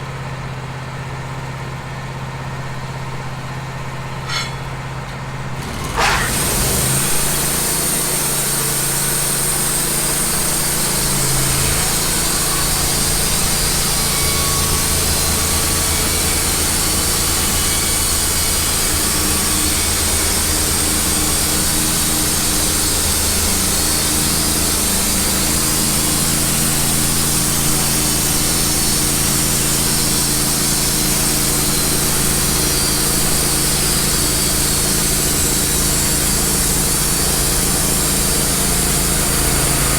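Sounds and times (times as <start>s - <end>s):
band sawmill cutting log: 3.5s - 39.9s
engine revving up from idle: 5.5s - 19.0s.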